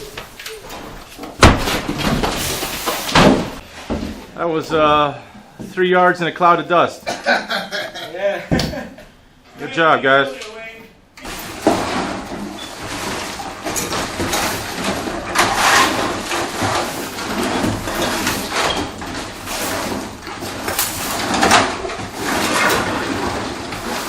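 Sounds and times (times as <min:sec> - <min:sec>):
demolition crashes: 0:00.0 - 0:04.4, 0:11.2 - 0:24.0
debris scraping and rattling: 0:00.0 - 0:05.0, 0:11.2 - 0:24.0.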